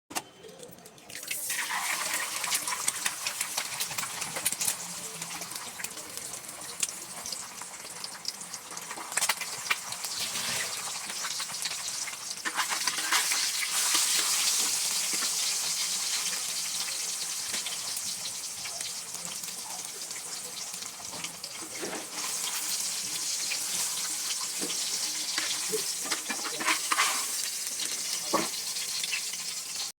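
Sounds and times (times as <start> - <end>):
omelet sizzling in frying pan: 1.1 - 30.0
utensil scraping pan: 12.4 - 15.3, 21.6 - 27.5.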